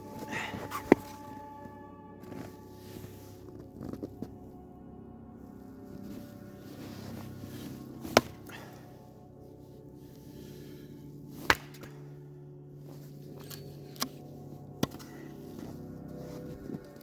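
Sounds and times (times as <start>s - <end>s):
axe chopping firewood: 8.0s - 8.7s, 11.4s - 12.0s, 14.8s - 15.2s.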